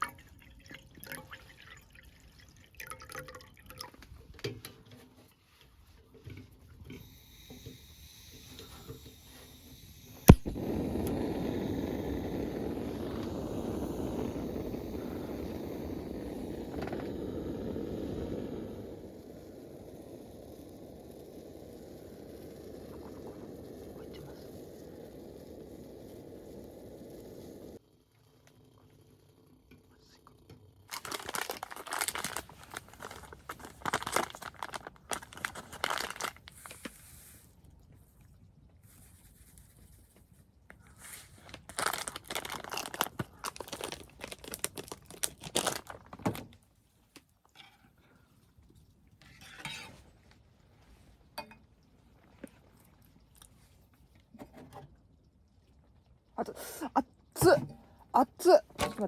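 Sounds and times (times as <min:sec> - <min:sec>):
packaging crinkling and tearing: 0:30.9 - 0:36.9, 0:41.1 - 0:46.6.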